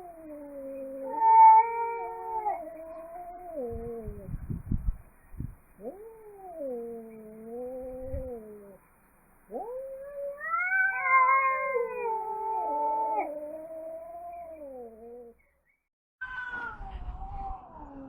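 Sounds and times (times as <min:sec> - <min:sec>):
angry cat yowling: 0:00.0 - 0:04.3, 0:05.8 - 0:08.8, 0:09.5 - 0:15.3.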